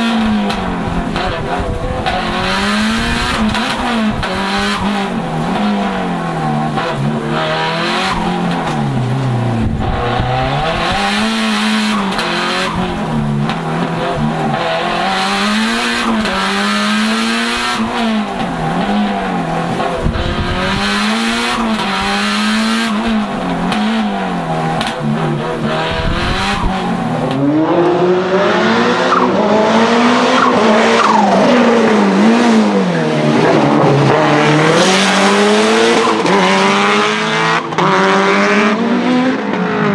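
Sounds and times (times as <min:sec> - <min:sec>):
tyres squealing: 0:00.0 - 0:27.5
car engine revving hard: 0:00.0 - 0:39.9.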